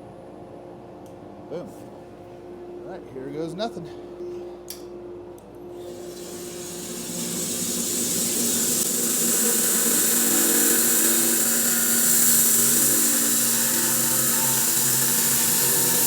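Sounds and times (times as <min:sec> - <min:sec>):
bandsaw cutting log: 0:05.9 - 0:16.0.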